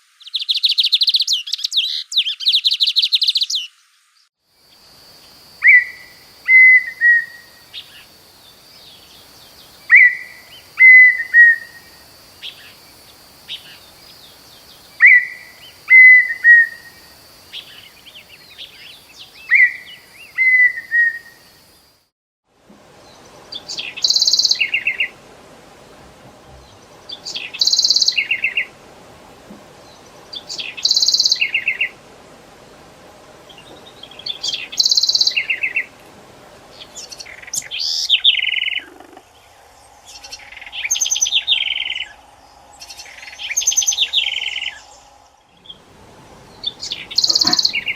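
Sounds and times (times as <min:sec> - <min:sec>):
steady high hum: 0:22.6 - 0:47.9.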